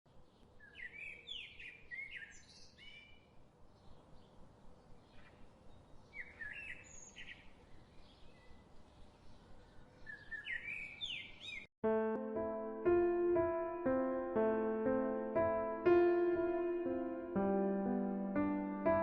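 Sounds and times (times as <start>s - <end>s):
birds chirping: 0.1s - 11.7s.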